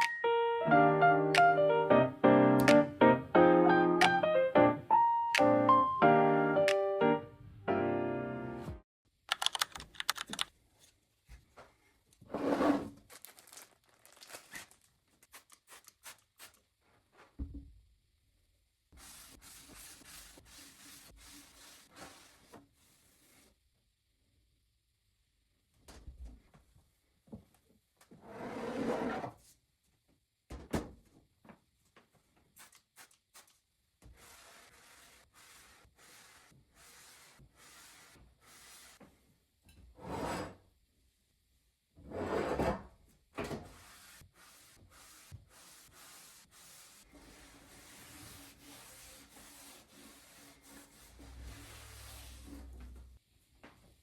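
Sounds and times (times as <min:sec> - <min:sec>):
cloth wiping wooden surface: 0:43.7 - 0:52.6.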